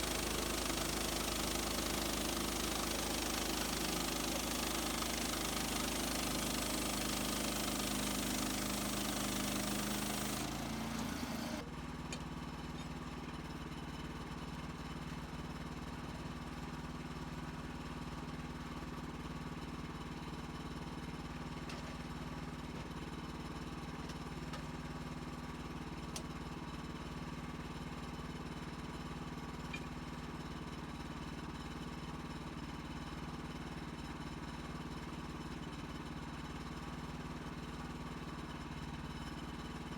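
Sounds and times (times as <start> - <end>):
gas engine running: 0.0 - 11.6.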